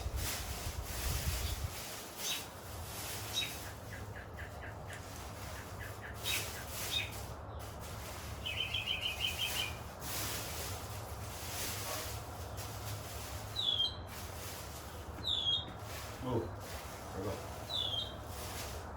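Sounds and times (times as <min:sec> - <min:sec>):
small bird chirping: 0:02.2 - 0:02.5, 0:03.2 - 0:09.8, 0:13.5 - 0:14.1, 0:15.1 - 0:15.8, 0:17.6 - 0:18.4.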